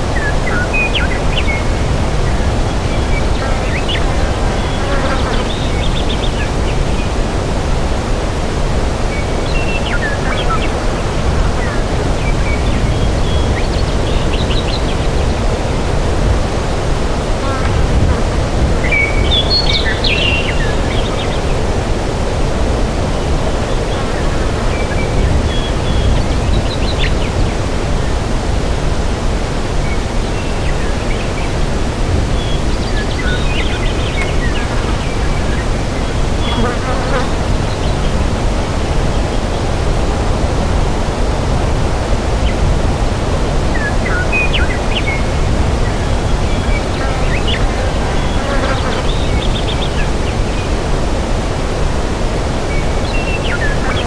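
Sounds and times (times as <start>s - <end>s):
birds chirping: 18.8s - 21.6s, 43.8s - 50.8s.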